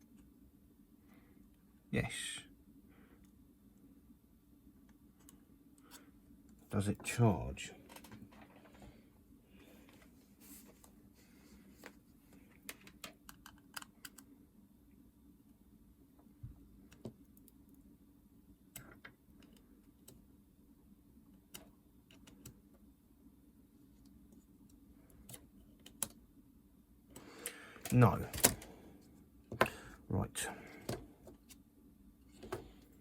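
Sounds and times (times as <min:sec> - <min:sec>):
low steady hum: 0:00.0 - 0:33.0
plastic parts clicking: 0:12.7 - 0:14.3.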